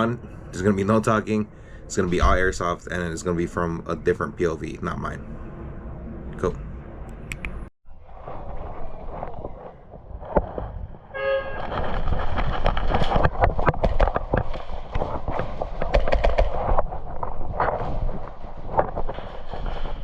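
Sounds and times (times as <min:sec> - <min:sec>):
wind rumble on microphone: 0:00.0 - 0:20.0
short horn toot: 0:11.1 - 0:11.7
sharp clicks and knocks: 0:11.6 - 0:17.8.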